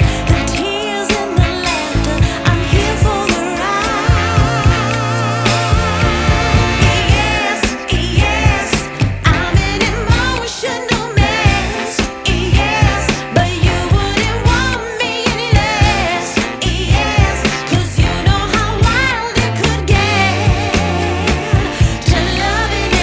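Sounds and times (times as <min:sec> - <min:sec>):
person singing: 0:00.0 - 0:23.0
steady drum beat: 0:00.0 - 0:23.0.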